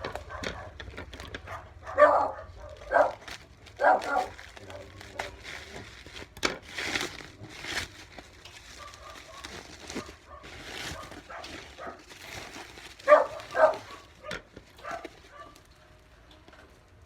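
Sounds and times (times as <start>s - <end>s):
dog barking: 0.0s - 0.8s, 1.4s - 5.3s, 8.8s - 12.1s, 13.0s - 15.7s.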